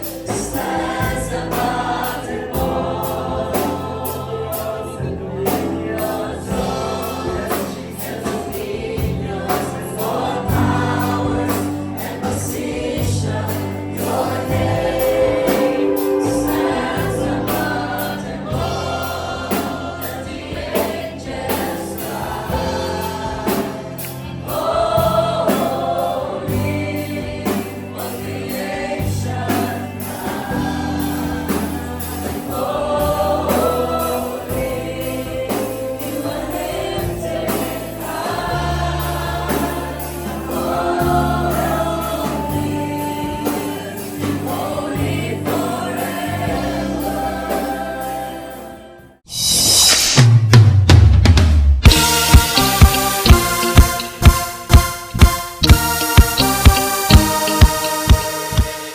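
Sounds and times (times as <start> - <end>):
band with bass and drums: 0.0 - 48.2, 50.0 - 58.9
congregation singing: 0.0 - 49.3, 51.9 - 58.9.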